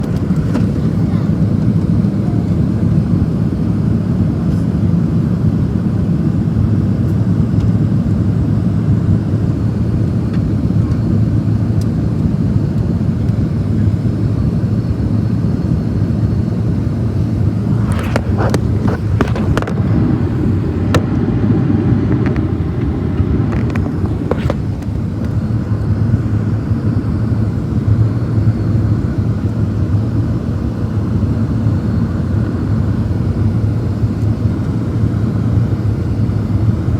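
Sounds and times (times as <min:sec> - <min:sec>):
jet engine roar: 0:00.0 - 0:04.4, 0:14.8 - 0:36.9
airflow past fuselage: 0:17.1 - 0:26.6.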